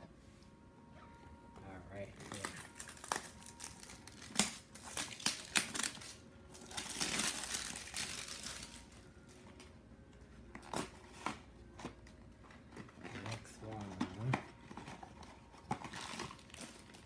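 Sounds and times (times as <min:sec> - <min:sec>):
foil bag crinkling: 0:02.0 - 0:09.6, 0:12.6 - 0:17.0.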